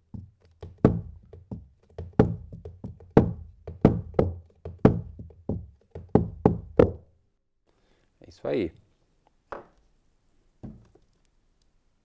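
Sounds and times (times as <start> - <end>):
homemade tape drum booming: 0.8 - 7.0.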